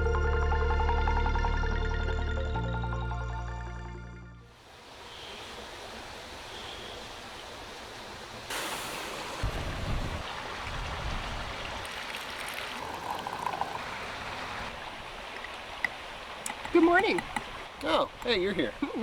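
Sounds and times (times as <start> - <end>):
creek water rushing over rocks: 4.6 - 19.0.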